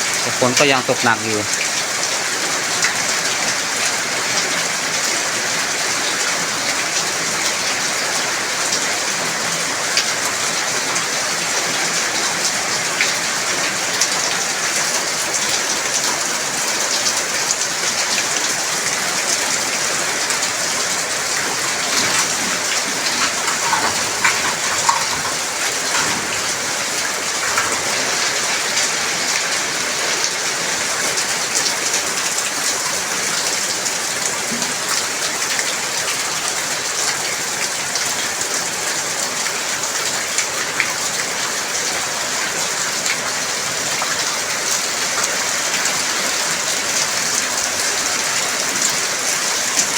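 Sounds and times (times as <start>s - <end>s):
heavy rain falling: 0.0s - 49.9s
raindrops ticking close by: 19.2s - 30.5s.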